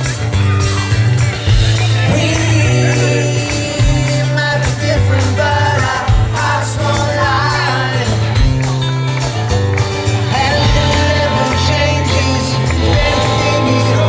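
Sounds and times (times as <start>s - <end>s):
heavy bass line: 0.0s - 14.0s
live rock band playing: 0.0s - 14.0s
person singing: 1.9s - 8.9s, 10.2s - 14.0s.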